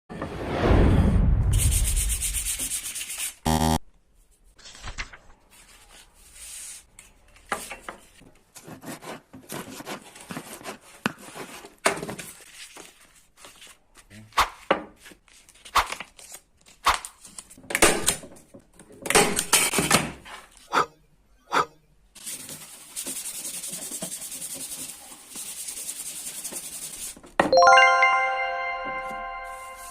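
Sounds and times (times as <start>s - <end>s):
sandpaper rubbing on wood: 1.6s - 3.4s, 22.2s - 27.2s.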